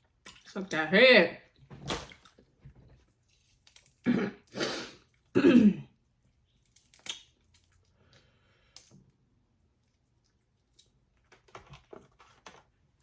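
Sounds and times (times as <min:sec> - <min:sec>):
throat clearing: 0:04.1 - 0:04.5, 0:05.4 - 0:05.9.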